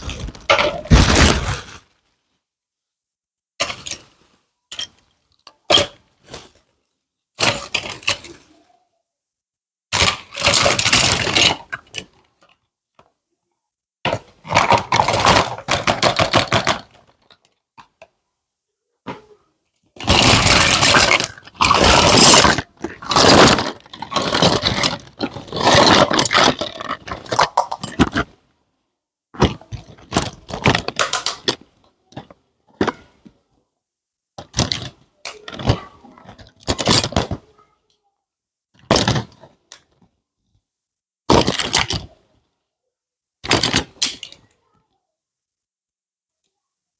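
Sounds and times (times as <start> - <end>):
plastic toy pieces handled: 14.1 - 18.2, 20.0 - 28.3, 29.4 - 33.4, 43.4 - 44.5.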